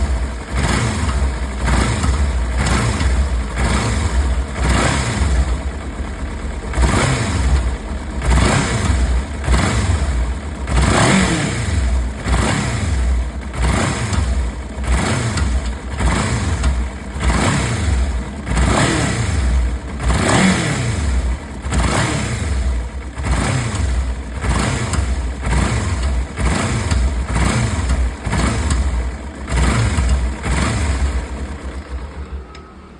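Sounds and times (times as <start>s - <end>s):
motorcycle engine revving: 0.0s - 32.9s
steady low engine rumble: 0.0s - 32.9s.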